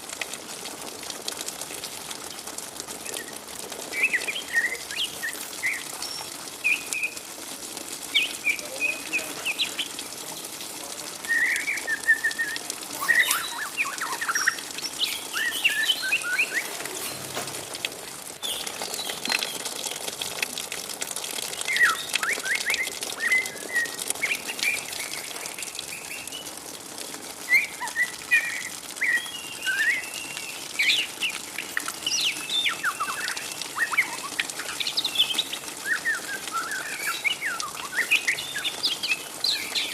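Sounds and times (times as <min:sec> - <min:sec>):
young bird twittering: 0:11.4 - 0:16.8, 0:27.5 - 0:39.9.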